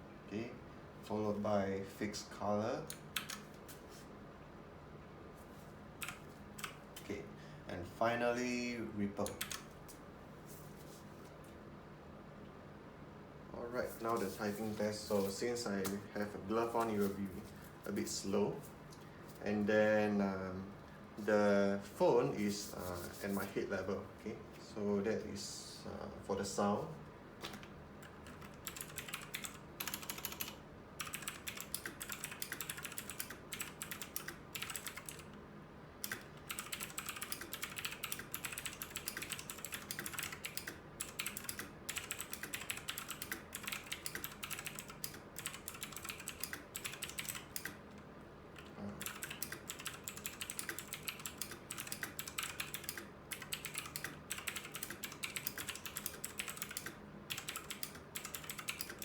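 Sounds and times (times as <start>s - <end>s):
mechanical keyboard typing: 2.9s - 3.5s, 6.0s - 6.8s, 9.2s - 9.7s, 28.0s - 35.4s, 36.0s - 47.8s, 48.6s - 59.0s.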